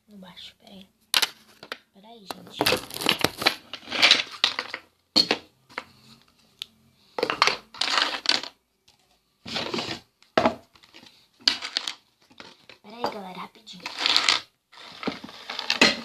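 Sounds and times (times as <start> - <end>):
phone handling rustling and clattering: 1.1 - 4.8.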